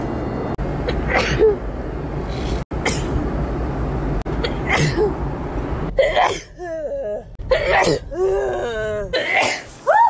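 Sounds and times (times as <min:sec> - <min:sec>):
low background rumble: 0:00.0 - 0:10.0.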